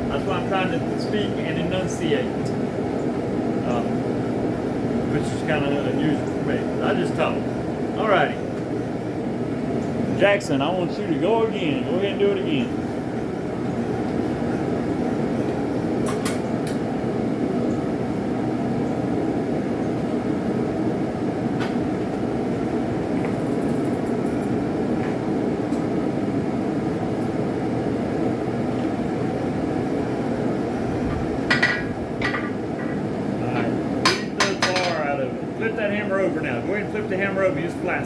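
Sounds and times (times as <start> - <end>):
forge roaring: 30.3 - 33.9
hammer strikes on hot steel: 34.0 - 35.0.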